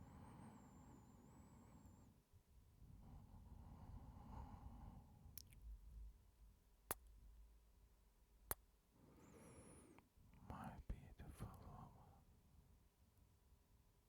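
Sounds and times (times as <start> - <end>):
faint breathing: 9.0 - 10.1.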